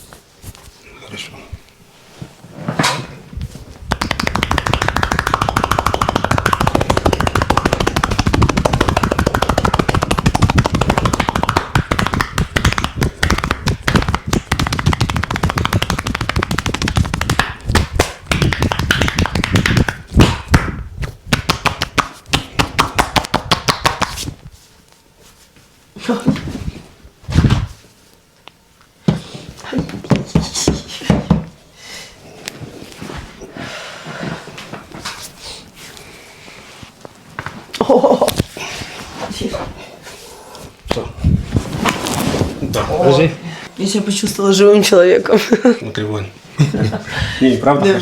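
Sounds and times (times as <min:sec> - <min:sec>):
rapid percussive massage strikes: 0:03.9 - 0:24.4.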